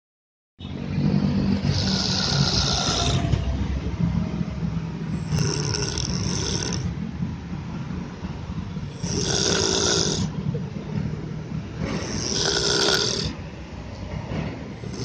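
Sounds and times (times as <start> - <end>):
hissing breaths: 1.6 - 3.3, 11.8 - 13.4
person snoring: 1.6 - 3.3, 5.2 - 6.9, 9.0 - 10.3, 12.0 - 13.4.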